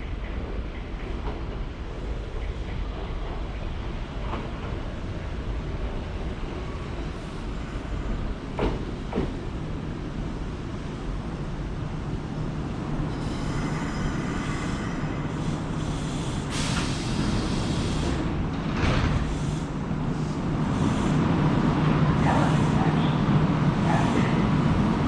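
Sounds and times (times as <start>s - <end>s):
air brake hisses: 15.4s - 18.2s.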